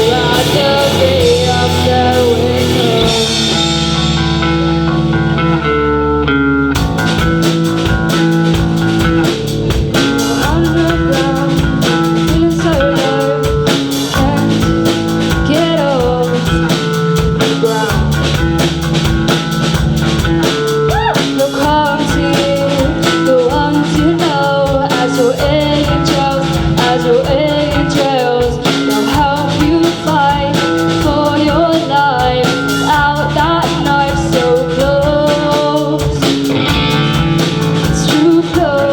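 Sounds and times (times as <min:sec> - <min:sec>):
person singing: 0:00.0 - 0:04.3, 0:09.9 - 0:18.4, 0:20.8 - 0:38.9
drum kit: 0:00.0 - 0:38.9
electric guitar chords: 0:00.0 - 0:38.9.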